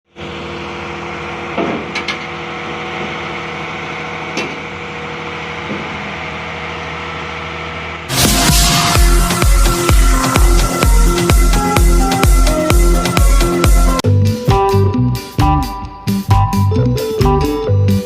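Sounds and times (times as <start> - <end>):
diesel engine running: 0.1 - 14.0
electronic dance music: 8.1 - 18.0.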